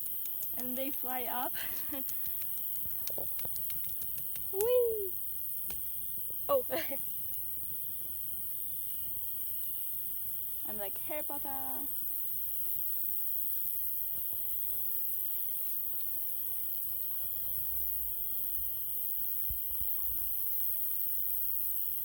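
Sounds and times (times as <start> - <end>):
crickets chirring: 0.0 - 22.0
faint clicks: 1.5 - 5.0.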